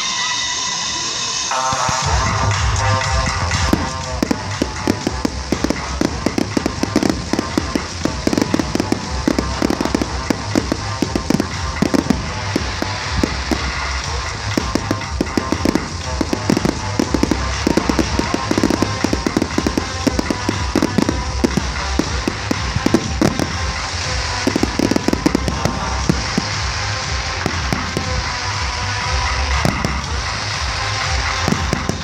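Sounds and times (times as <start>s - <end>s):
fireworks bangs and crackles: 0.0s - 32.0s
music playing: 0.0s - 32.0s.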